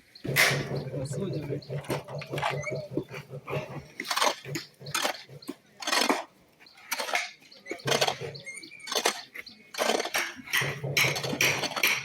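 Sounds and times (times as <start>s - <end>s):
metal tool scraping into earth: 4.0s - 12.0s.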